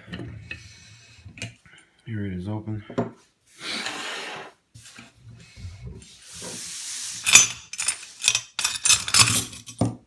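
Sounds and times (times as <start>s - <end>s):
handling noise rubbing and scraping: 4.8s - 9.9s.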